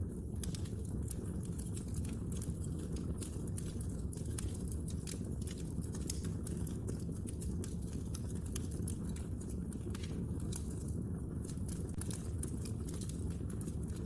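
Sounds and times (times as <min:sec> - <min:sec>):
logs crackling in fireplace: 0:00.0 - 0:14.0.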